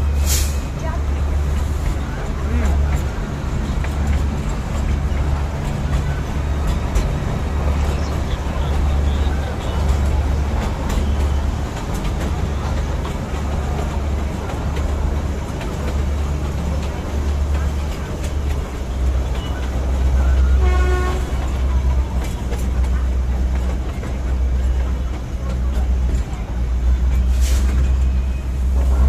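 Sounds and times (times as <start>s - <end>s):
toy train horn toot: 20.6s - 21.3s.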